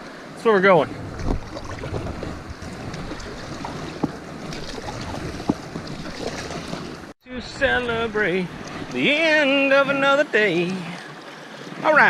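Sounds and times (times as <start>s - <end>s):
wind buffeting microphone: 0.8s - 9.4s
water sloshing and splashing: 0.9s - 12.0s.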